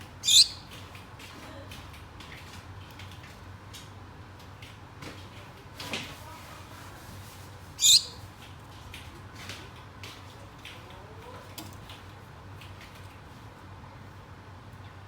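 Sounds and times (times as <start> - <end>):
finches calling: 0.2 - 0.7, 7.8 - 8.2.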